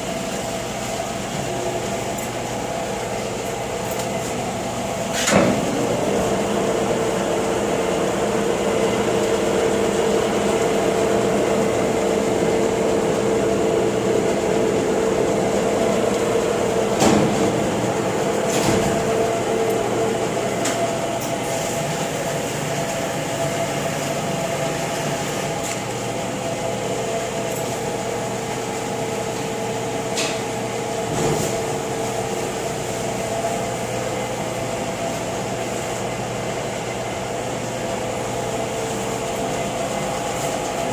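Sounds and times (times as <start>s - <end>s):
lathe machine hum: 0.0s - 31.1s.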